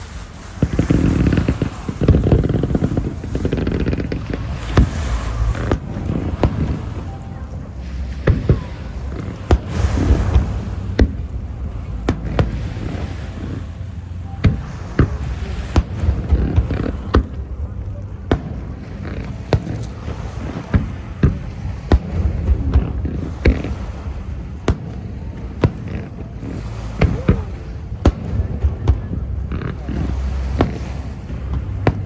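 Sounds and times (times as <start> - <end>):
fireworks exploding: 0.0 - 32.0
low rumble: 0.0 - 32.0.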